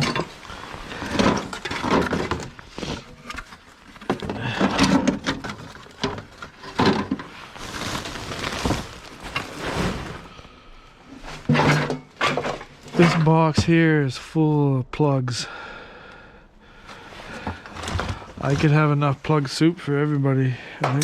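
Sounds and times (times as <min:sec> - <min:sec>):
scrap knocking and clattering: 0:00.0 - 0:07.4, 0:11.3 - 0:13.8.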